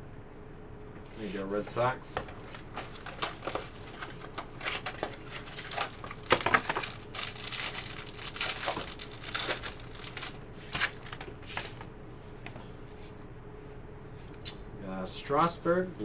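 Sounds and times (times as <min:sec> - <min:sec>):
cards being handled: 0:01.1 - 0:12.8
wrappers crinkling and tearing: 0:02.4 - 0:11.9.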